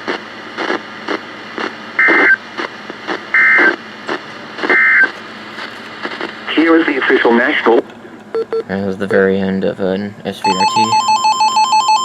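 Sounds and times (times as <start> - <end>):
radio hiss: 0.0 - 7.8
two-tone digital data bursts: 2.0 - 2.4, 4.7 - 5.1.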